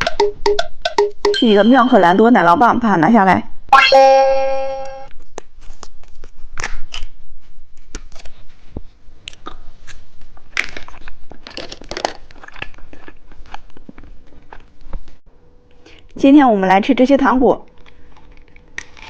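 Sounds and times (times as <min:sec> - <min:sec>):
plastic packaging crinkling: 0:10.5 - 0:13.1.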